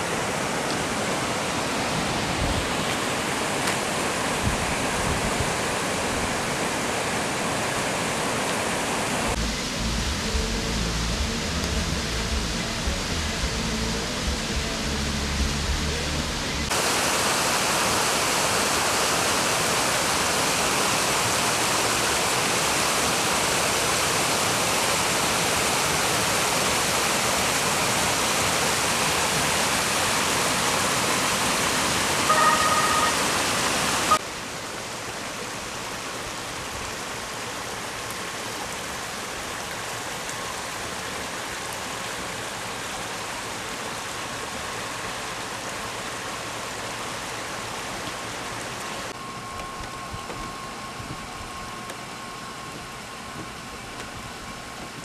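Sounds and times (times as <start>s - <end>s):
floodwater rushing: 0.0s - 49.2s
high-pitched tone: 32.2s - 34.2s.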